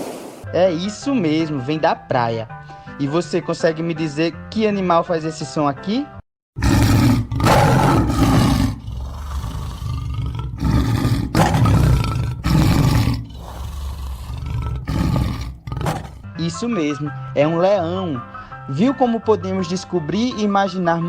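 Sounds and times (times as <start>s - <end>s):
lion roaring and grunting: 6.6s - 16.3s.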